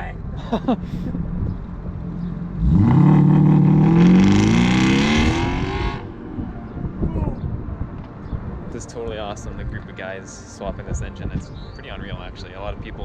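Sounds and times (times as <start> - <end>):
car engine revving: 2.1 - 6.5.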